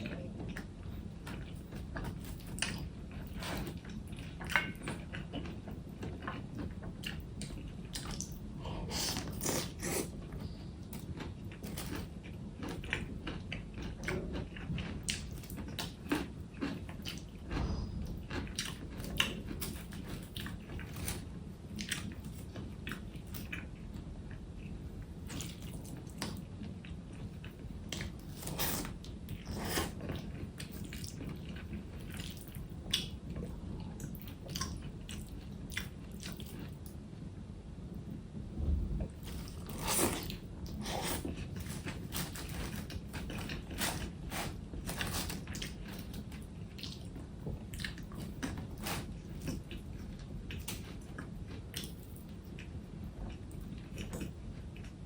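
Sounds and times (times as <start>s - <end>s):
person chewing and biting food: 11.0s - 23.7s
low hum: 17.3s - 21.6s, 36.5s - 43.4s.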